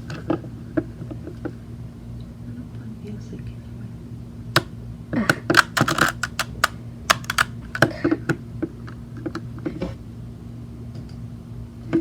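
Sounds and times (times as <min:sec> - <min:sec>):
puzzle cube clacking: 0:05.4 - 0:07.9.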